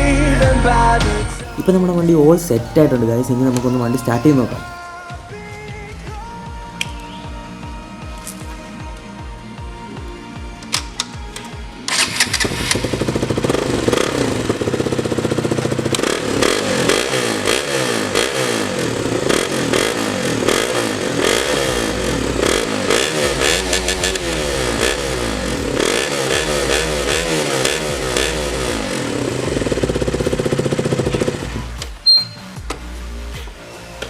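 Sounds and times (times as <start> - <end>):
motorcycle engine revving: 1.4 - 4.8, 11.9 - 32.4.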